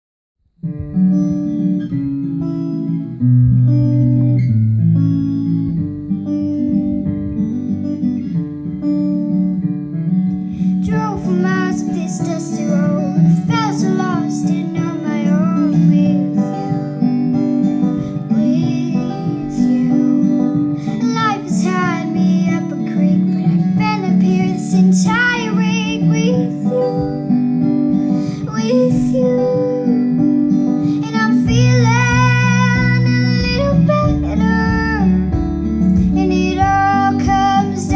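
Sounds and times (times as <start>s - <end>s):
strummed acoustic guitar: 0.6s - 37.9s
girl singing: 10.6s - 37.9s
deep bass part: 31.5s - 37.9s.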